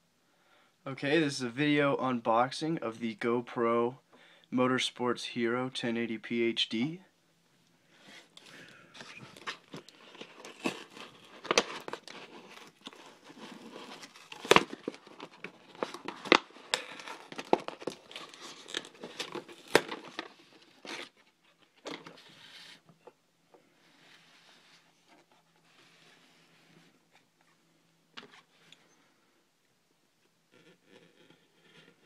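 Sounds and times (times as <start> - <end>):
packaging crinkling and snapping: 9.0 - 22.2.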